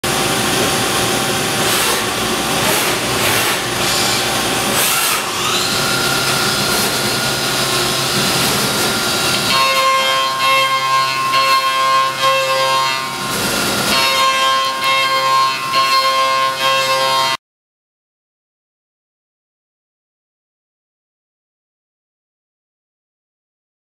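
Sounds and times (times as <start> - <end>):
machining center cutting: 0.0 - 17.4.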